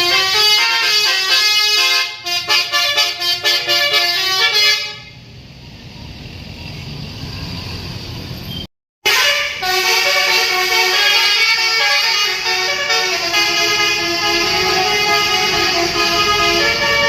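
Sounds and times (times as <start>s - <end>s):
musical bus horn melody: 0.0s - 5.2s, 9.0s - 17.0s
traffic rumble: 0.0s - 17.0s.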